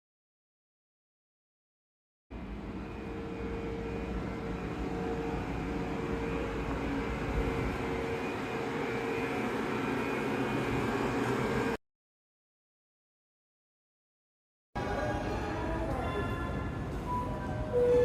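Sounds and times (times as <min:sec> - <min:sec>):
electric train humming: 0:02.3 - 0:11.8, 0:14.8 - 0:18.0.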